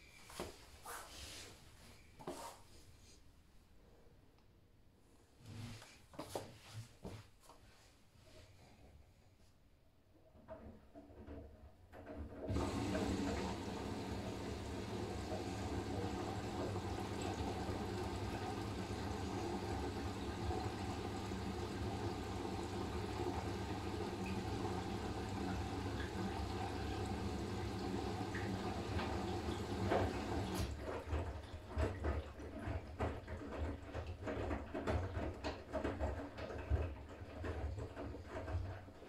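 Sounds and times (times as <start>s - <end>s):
washing machine hum: 10.0s - 39.0s
laundry splashing in drum: 12.0s - 39.0s
running water: 12.5s - 39.0s.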